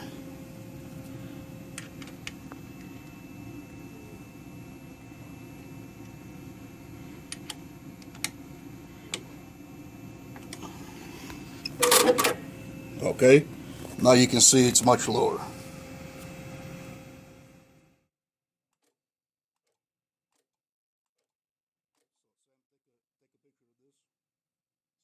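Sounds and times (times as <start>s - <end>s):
low steady hum: 0.0s - 17.9s.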